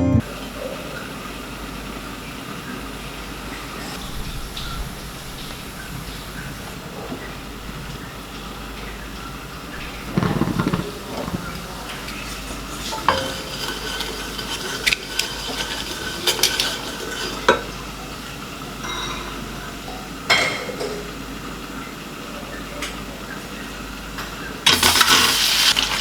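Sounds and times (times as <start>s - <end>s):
oily sizzle: 0.3s - 20.3s, 23.9s - 26.0s
utensil clinking against pot: 9.9s - 18.2s.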